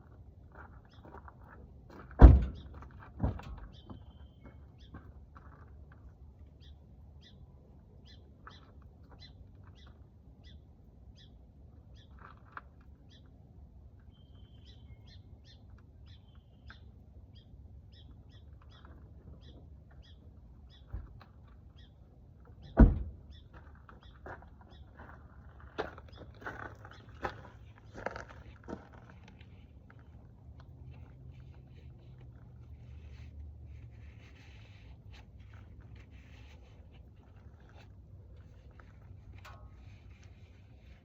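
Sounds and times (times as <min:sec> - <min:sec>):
loud thunk: 0:02.2 - 0:02.6, 0:22.8 - 0:23.1
small birds chirping: 0:03.6 - 0:05.5, 0:06.5 - 0:13.3, 0:14.0 - 0:28.5.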